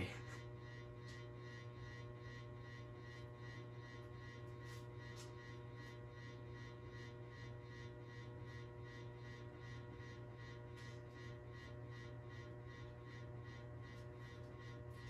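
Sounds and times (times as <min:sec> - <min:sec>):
ceiling fan motor humming: 0:00.0 - 0:15.0.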